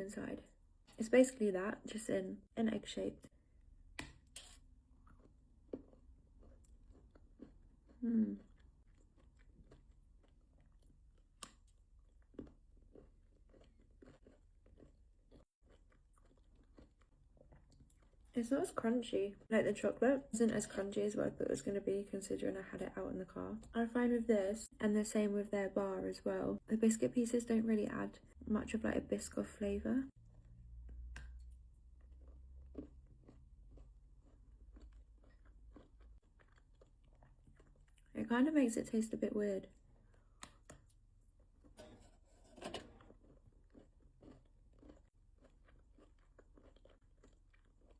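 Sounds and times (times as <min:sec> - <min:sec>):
chewing crunchy chocolate: 0:04.9 - 0:21.7, 0:30.1 - 0:38.2, 0:42.9 - 0:47.9.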